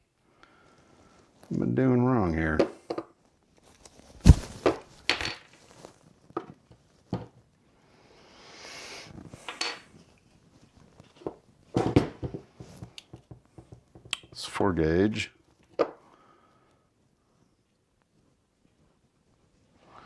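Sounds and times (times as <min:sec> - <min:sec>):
scraping rustle: 0:03.6 - 0:06.0.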